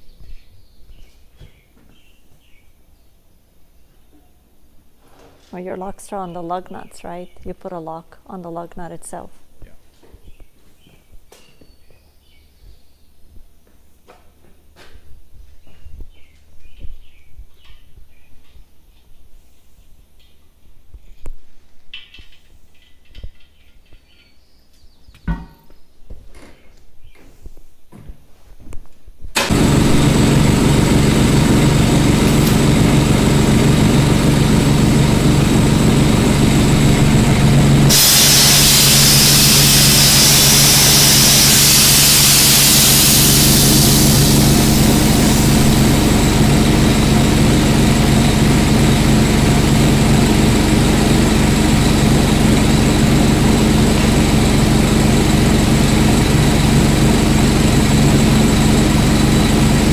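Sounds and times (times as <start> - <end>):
loud hiss of air: 29.4 - 55.0
heavy engine idling: 29.4 - 59.9.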